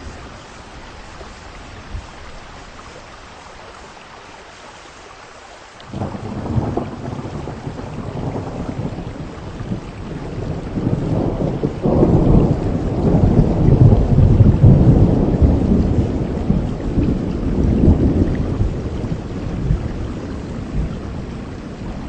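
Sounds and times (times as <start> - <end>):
heavy rain: 0.0 - 22.0
rolling thunder: 5.9 - 22.0.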